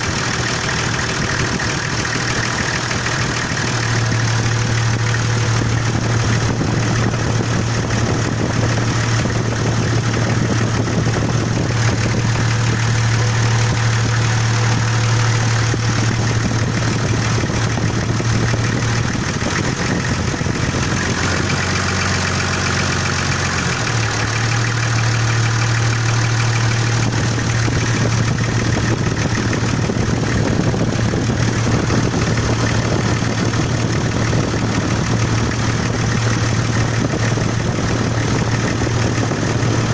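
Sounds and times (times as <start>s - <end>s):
diesel engine idling with knock: 0.0s - 39.9s.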